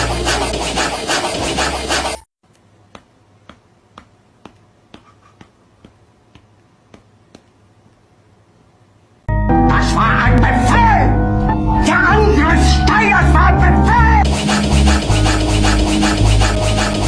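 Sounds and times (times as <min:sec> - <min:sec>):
loud scratchy rhythmic noise: 0:00.0 - 0:02.2, 0:14.0 - 0:17.0.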